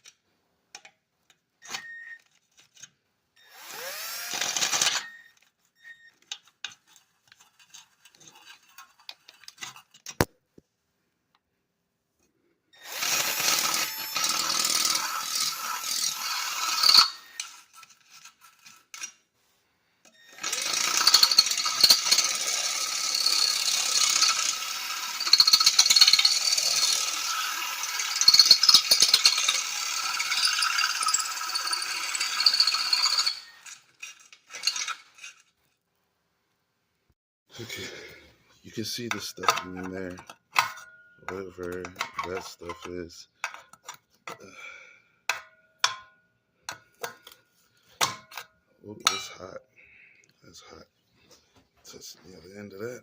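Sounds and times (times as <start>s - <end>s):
tools clicking and tapping: 0.0s - 3.0s, 6.2s - 10.4s, 39.0s - 44.5s, 45.3s - 49.4s
grinding and rattling: 20.4s - 35.8s.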